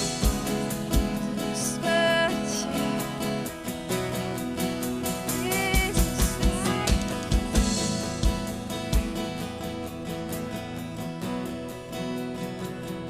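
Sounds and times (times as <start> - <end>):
drum kit: 0.0 - 13.0
sustained guitar chords: 0.0 - 13.0
kick drum beats: 5.7 - 9.4.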